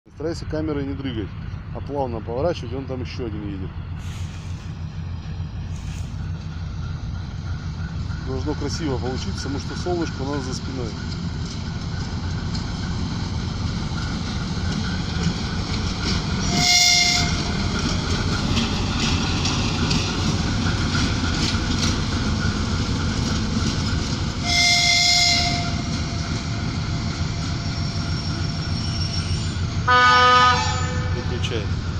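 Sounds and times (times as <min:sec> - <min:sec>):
diesel locomotive engine running: 0:00.1 - 0:31.9
locomotive horn blasts: 0:16.4 - 0:17.5, 0:24.4 - 0:25.9, 0:29.9 - 0:31.3.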